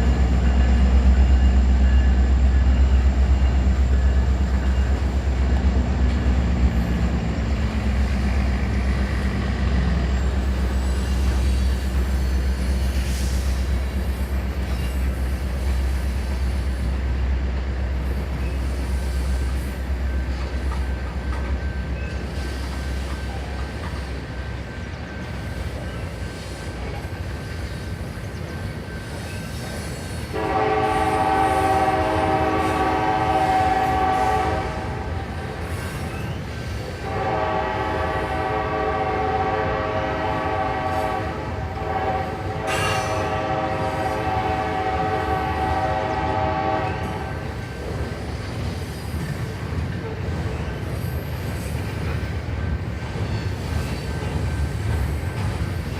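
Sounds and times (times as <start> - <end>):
moving train noise: 0.0 - 55.9
locomotive air horn: 30.3 - 35.4, 37.0 - 47.6.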